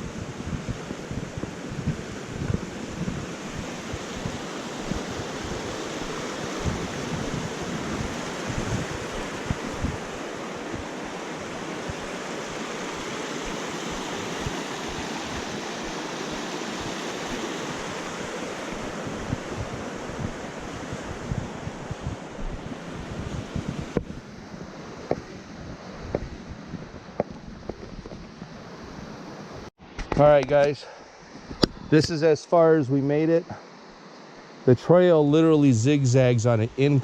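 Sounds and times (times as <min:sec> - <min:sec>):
wind buffeting microphone: 0:00.0 - 0:29.2
creek water rushing: 0:01.5 - 0:26.1.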